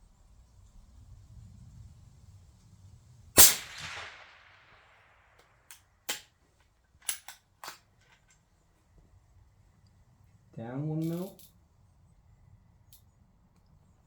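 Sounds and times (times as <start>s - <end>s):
rifle shot echoing: 3.4s - 5.4s
rifle bolt metallic clicks: 7.0s - 8.2s.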